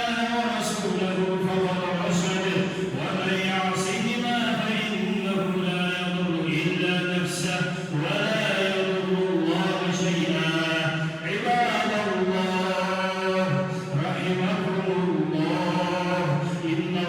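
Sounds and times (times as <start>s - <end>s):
man chanting melodic recitation: 0.0s - 17.0s.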